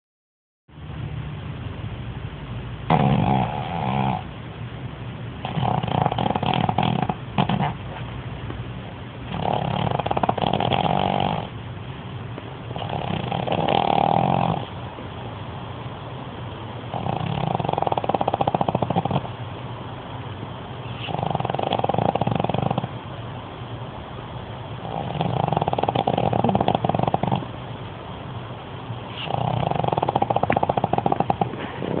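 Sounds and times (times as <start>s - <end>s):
dog snoring loudly: 2.8s - 4.3s, 5.4s - 8.0s, 9.2s - 11.6s, 12.7s - 14.8s, 16.9s - 19.4s, 20.8s - 23.0s, 24.7s - 27.6s, 29.1s - 32.0s
dog breathing: 2.9s - 4.3s, 5.4s - 8.1s, 9.2s - 11.6s, 12.7s - 14.8s, 16.8s - 19.4s, 20.7s - 23.0s, 24.7s - 27.8s, 28.8s - 32.0s.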